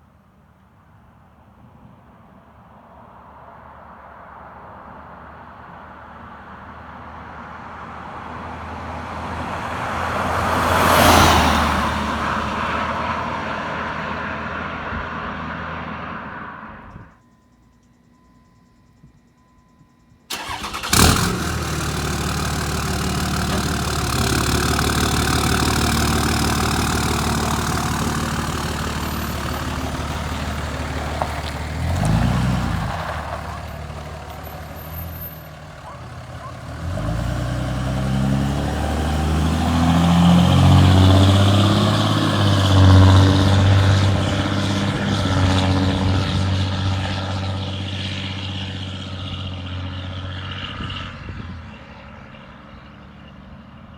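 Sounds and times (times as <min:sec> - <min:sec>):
diesel engine running loud: 0:20.3 - 0:53.9.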